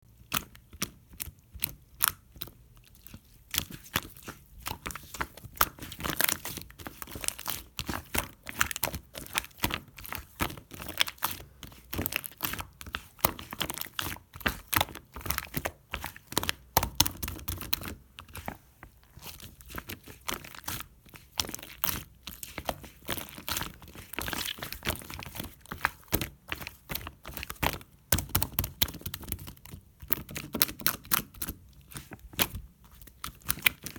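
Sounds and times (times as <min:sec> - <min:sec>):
slime squeezed crackling and popping: 0:00.2 - 0:18.5.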